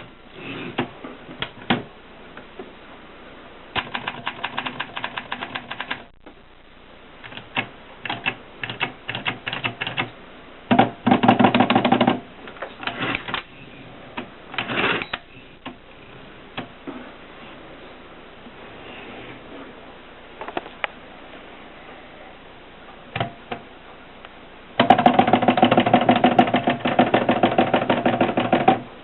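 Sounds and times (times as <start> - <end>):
typewriter keys clacking: 3.8 - 6.1, 8.1 - 10.1.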